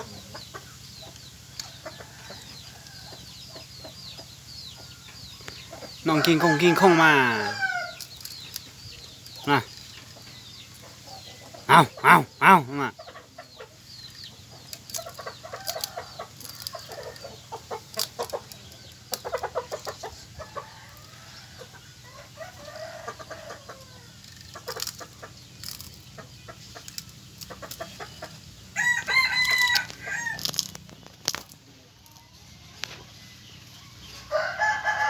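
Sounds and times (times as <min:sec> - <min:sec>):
chickens clucking: 0:00.0 - 0:35.0
rooster crowing: 0:06.0 - 0:08.0, 0:28.8 - 0:30.5, 0:34.3 - 0:35.0.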